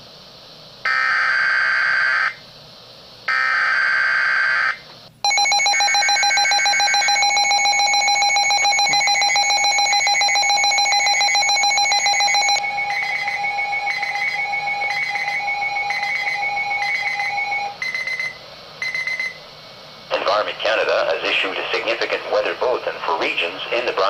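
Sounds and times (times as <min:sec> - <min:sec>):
pulsing electronic alert tone: 0:05.3 - 0:17.7.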